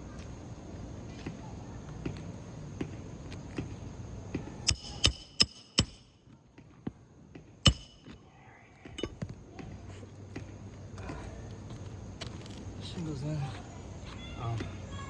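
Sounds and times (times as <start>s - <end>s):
hammer strikes with metallic ring: 4.7s - 6.2s, 7.6s - 8.2s.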